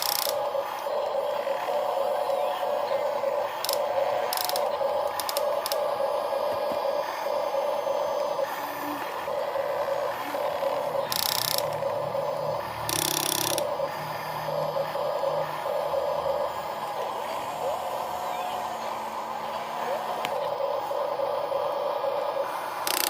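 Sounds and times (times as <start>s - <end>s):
toy motor and gears whirring: 0.0s - 23.0s
clicks: 3.6s - 5.9s.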